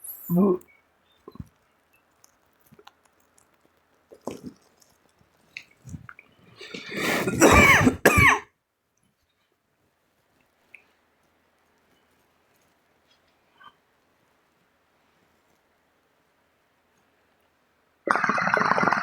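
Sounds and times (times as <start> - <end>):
faint clicks and knocks: 1.2 - 6.4
rasping breath: 6.6 - 8.0
person coughing hard: 6.8 - 8.4.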